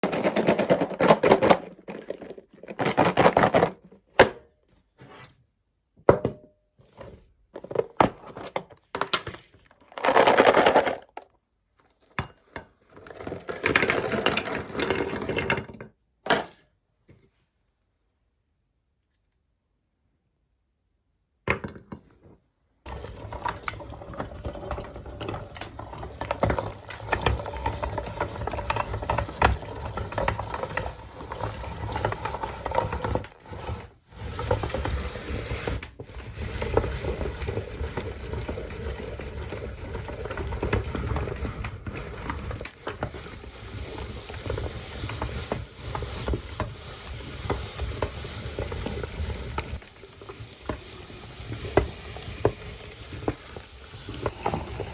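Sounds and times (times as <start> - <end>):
meat grinder crunching frozen fruit: 9.9 - 11.2, 22.9 - 54.9.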